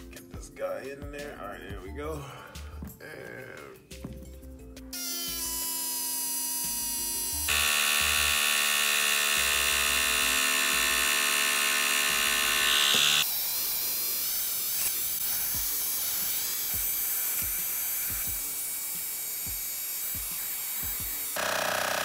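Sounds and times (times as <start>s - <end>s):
background music: 0.0s - 11.4s
air compressor whining: 5.4s - 13.8s.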